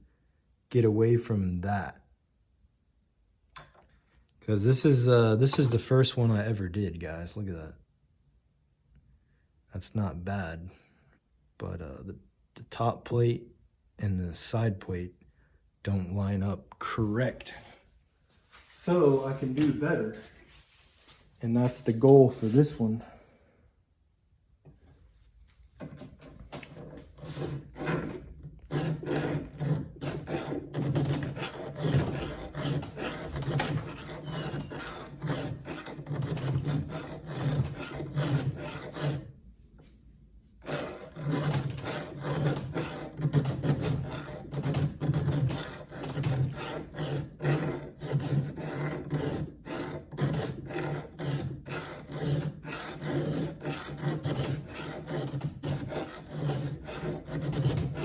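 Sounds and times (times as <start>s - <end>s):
hand file rasping on metal: 4.9s - 6.0s, 25.8s - 39.4s, 40.6s - 58.0s.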